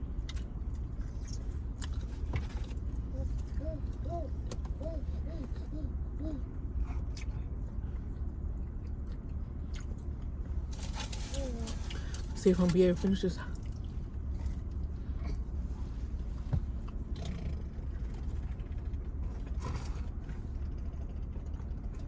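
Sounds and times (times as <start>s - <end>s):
low room hum: 0.0s - 22.0s
chewing mouth sounds: 0.3s - 4.7s.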